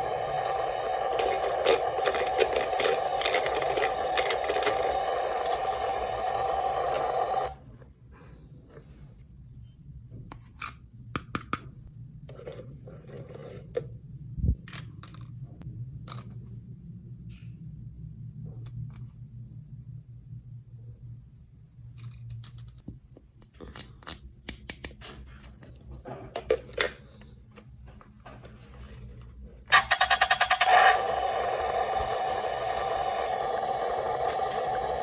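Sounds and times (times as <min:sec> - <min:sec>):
plastic toy pieces clicking: 0:01.1 - 0:06.2
toy buzzing tone: 0:01.1 - 0:07.1, 0:29.7 - 0:35.0.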